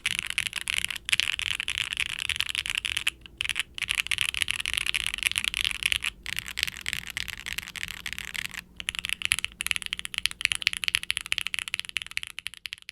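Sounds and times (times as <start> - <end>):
mechanical keyboard typing: 0.0 - 12.9.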